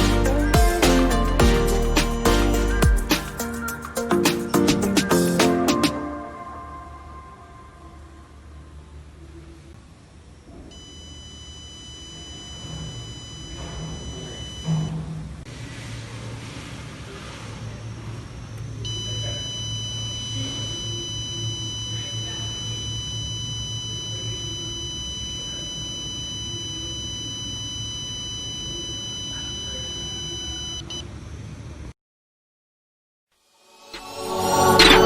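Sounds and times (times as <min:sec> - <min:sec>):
smoke detector alarm tone: 0:10.7 - 0:15.0, 0:18.8 - 0:31.0.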